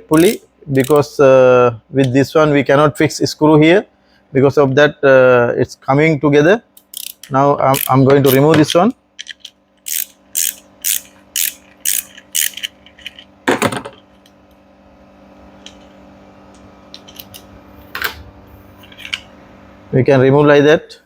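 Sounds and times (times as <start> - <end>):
ratchet wrench clicking: 0.1 - 1.0, 6.8 - 13.2.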